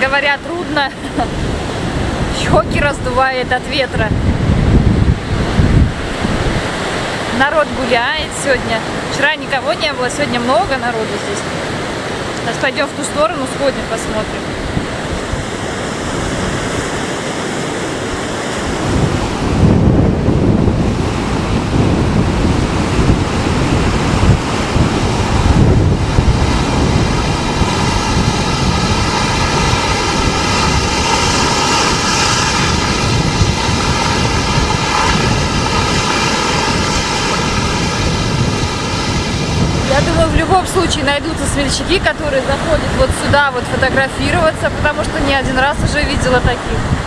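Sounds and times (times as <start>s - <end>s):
stormy sea surf crashing: 0.0s - 47.0s
wind buffeting microphone: 0.0s - 47.0s
steady pitched hum: 17.9s - 45.8s.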